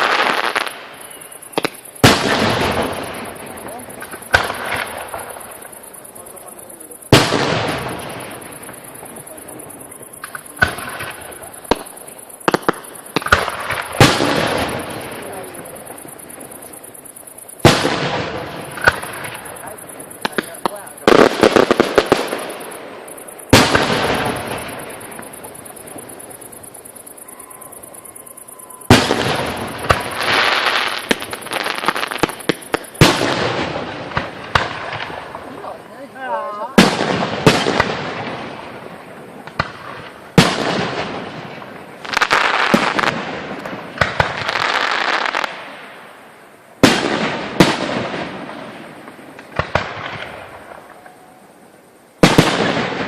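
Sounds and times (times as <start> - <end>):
fast firework crackling: 0.0 - 27.2, 28.6 - 35.8, 36.7 - 46.1, 46.8 - 50.8, 52.2 - 53.0
firework shells bursting: 7.1 - 27.2.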